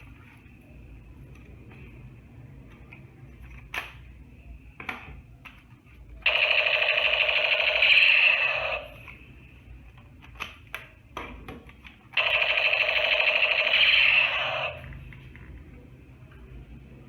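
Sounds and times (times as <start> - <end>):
toy gun electronic buzzing: 6.2 - 9.0, 12.2 - 14.8.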